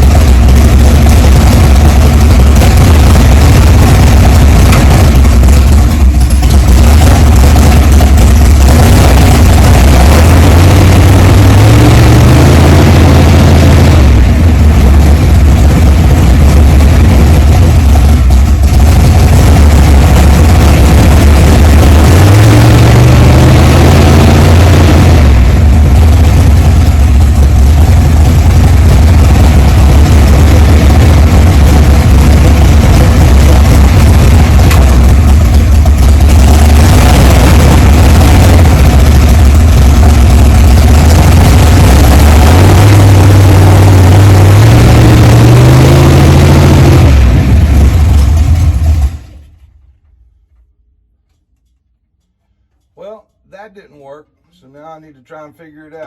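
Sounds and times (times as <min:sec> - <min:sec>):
race car engine revving: 0:00.0 - 0:49.2.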